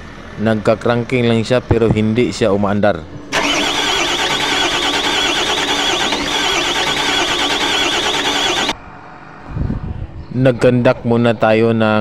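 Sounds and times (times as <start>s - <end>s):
diesel engine cranking on starter: 3.3s - 8.8s.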